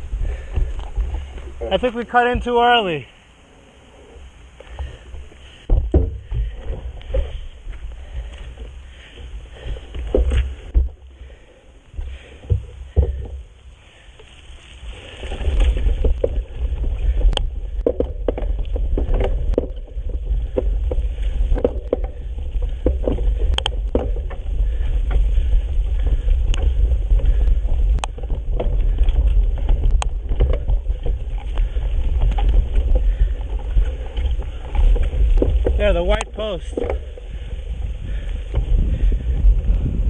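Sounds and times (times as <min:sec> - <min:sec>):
bike clicks and rattles: 0:00.0 - 0:40.0
wind buffeting microphone: 0:15.0 - 0:40.0.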